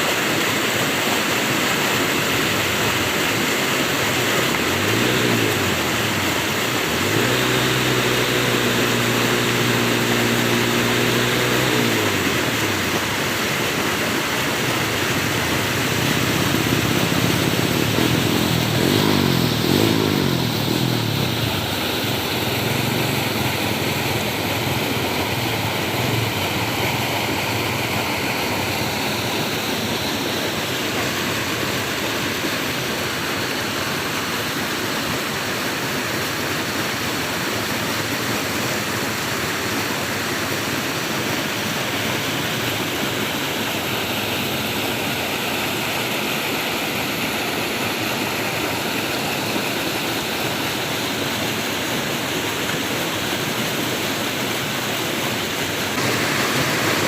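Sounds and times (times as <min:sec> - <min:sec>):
flowing water rushing: 0:00.0 - 0:57.0
distant engine droning: 0:00.2 - 0:35.7, 0:55.4 - 0:57.0.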